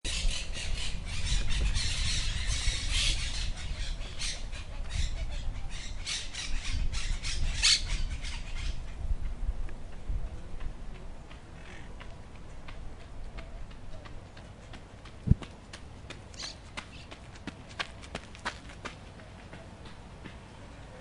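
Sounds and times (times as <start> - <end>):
birds squawking and chirping: 0.1 - 9.0.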